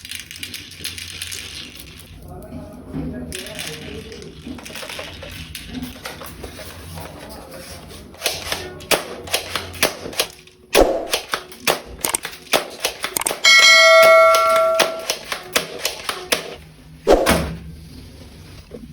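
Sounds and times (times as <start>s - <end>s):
toy guns clicking and snapping: 8.2s - 13.5s, 14.8s - 16.6s
bell-like ringing tone: 13.5s - 15.1s.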